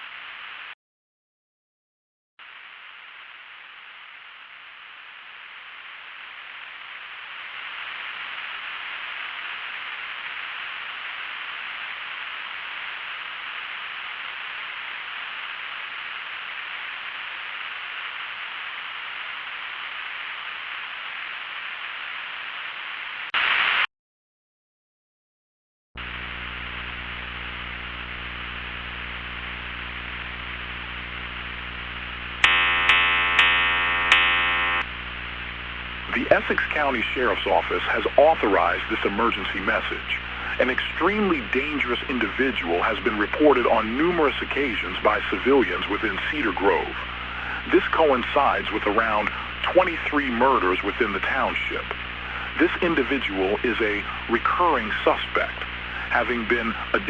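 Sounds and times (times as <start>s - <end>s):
static hiss: 2.4s - 23.9s, 26.0s - 57.0s
low electronic hum: 26.0s - 43.2s
loud pulsing tone: 32.4s - 34.9s.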